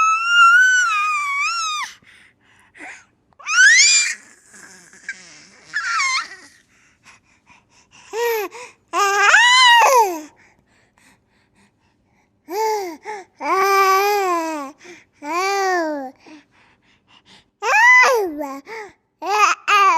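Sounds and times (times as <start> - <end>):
baby laughing in squeals: 3.4 - 6.6.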